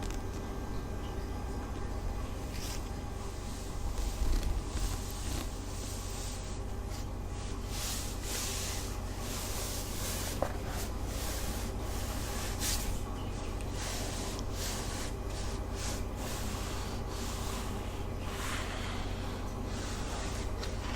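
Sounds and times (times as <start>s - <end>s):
steady low hum: 0.0s - 20.9s
soft rubbing strokes: 2.2s - 20.9s.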